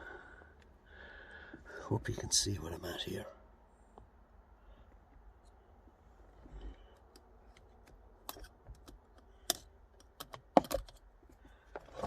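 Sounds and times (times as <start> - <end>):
light clicks and taps of hand work: 4.8 - 5.6.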